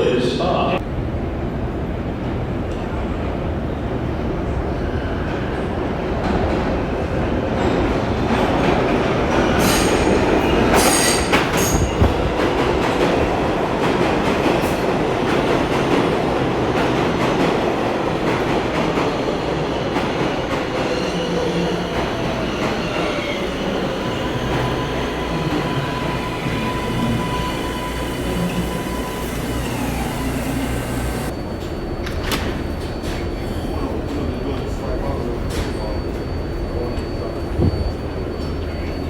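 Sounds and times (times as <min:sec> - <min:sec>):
subway train rumbling: 0:00.0 - 0:39.0
metal wheels squealing on rails: 0:09.4 - 0:12.2, 0:20.0 - 0:39.0
motor whine: 0:26.7 - 0:31.3.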